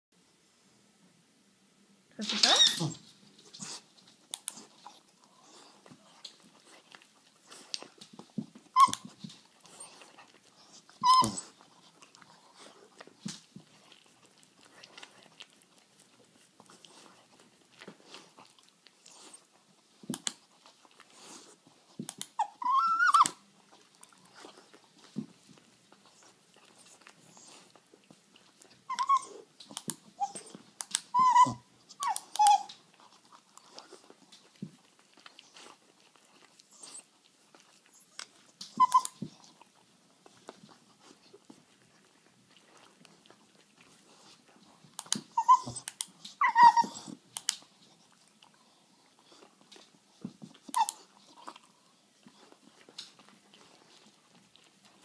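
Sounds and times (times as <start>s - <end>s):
dog whining: 2.2s - 3.8s, 8.7s - 11.6s, 22.3s - 23.4s, 28.8s - 29.5s, 30.2s - 32.8s, 36.7s - 39.6s, 45.3s - 47.2s, 50.6s - 51.6s.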